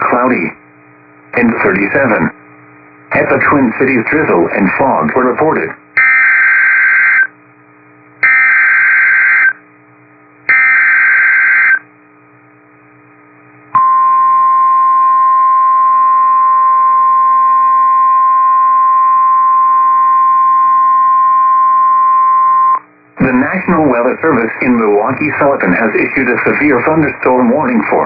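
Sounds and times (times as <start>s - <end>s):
faint hum: 0.0s - 28.0s
steady alarm tone: 6.0s - 7.3s, 8.2s - 9.6s, 10.5s - 11.8s.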